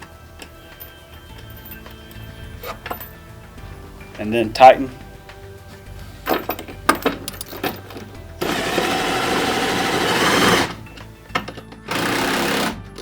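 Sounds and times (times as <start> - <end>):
cordless drill spinning nut: 6.6 - 13.0.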